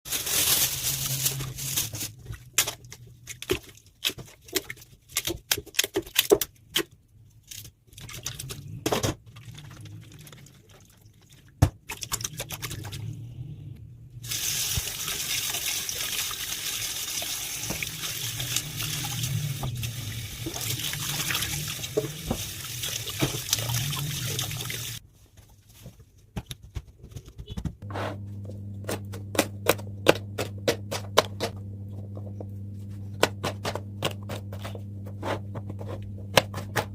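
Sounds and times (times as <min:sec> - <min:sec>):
tap water running: 0:14.2 - 0:25.0.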